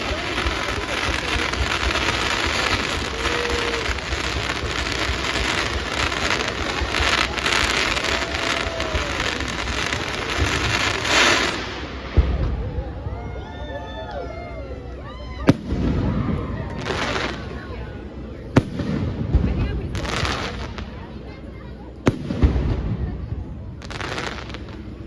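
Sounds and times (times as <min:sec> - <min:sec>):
sharp firework bang: 0:00.0 - 0:13.1, 0:15.5 - 0:17.4, 0:22.0 - 0:24.6
fireworks crackling: 0:00.0 - 0:25.0.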